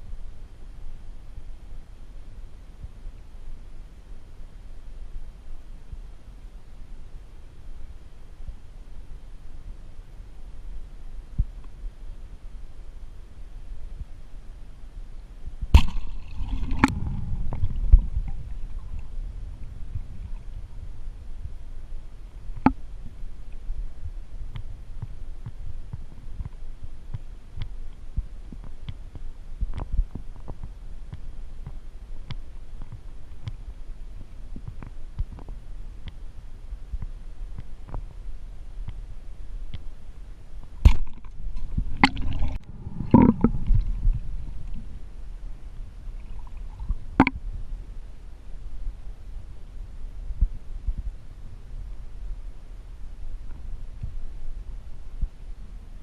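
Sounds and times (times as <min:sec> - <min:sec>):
muffled underwater rumble: 0:00.0 - 0:56.0
soft underwater clicks and knocks: 0:15.8 - 0:19.1, 0:24.5 - 0:33.6, 0:34.5 - 0:36.2, 0:37.0 - 0:38.2, 0:40.9 - 0:44.9, 0:46.2 - 0:47.4.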